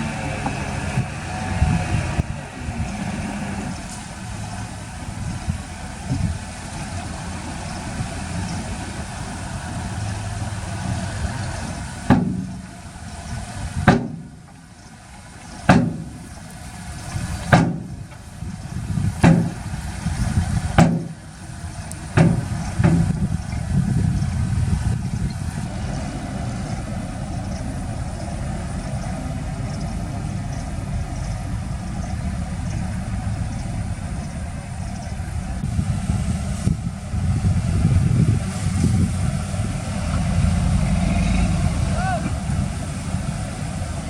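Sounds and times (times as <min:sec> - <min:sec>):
heavy diesel machinery running: 0:00.0 - 0:44.0
sharp knocks: 0:12.1 - 0:12.6, 0:13.8 - 0:14.4, 0:15.7 - 0:16.2, 0:17.5 - 0:18.2, 0:19.2 - 0:19.7, 0:20.8 - 0:21.2, 0:22.2 - 0:23.2.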